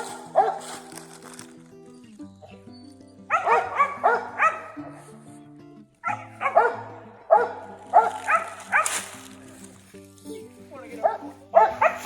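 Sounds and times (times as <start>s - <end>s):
dogs barking: 0.0s - 0.9s, 3.2s - 5.2s, 6.0s - 9.3s, 11.0s - 12.0s
background music: 0.0s - 12.0s.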